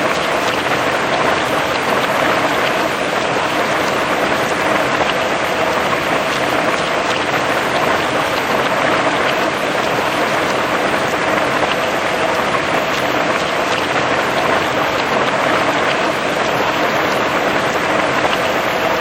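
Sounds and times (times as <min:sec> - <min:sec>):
heavy rain on grass and trees: 0:00.0 - 0:19.0.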